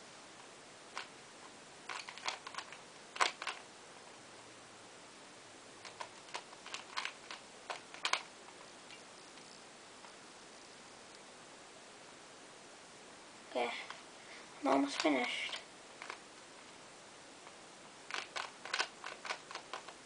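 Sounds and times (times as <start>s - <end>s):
plastic cube clicking: 1.9s - 3.6s, 5.8s - 8.3s, 14.8s - 16.2s, 18.1s - 20.0s.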